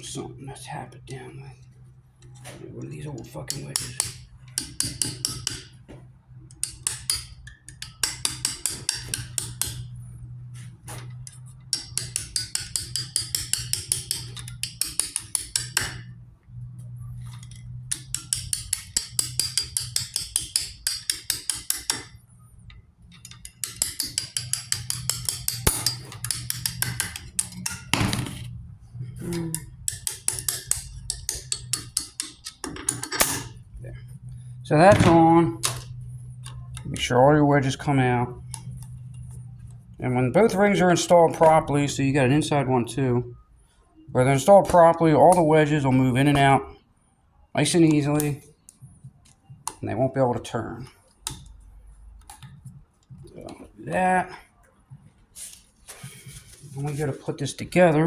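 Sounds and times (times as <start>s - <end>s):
metal-on-metal tapping: 3.4s - 10.3s, 11.0s - 16.2s, 17.1s - 28.5s, 29.1s - 34.1s, 34.9s - 37.1s, 38.4s - 39.8s, 51.2s - 51.6s.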